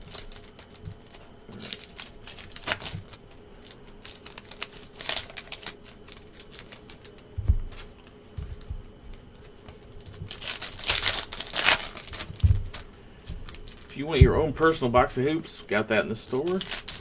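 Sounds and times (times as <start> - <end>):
cards rustling: 0.0 - 17.0
trading cards clicking: 10.3 - 17.0
dull thumps against table: 14.2 - 14.8.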